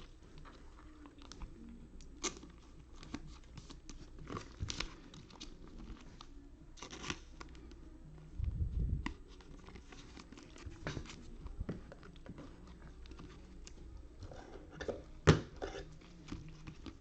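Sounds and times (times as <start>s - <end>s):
cards flicking and rustling: 2.1s - 7.8s.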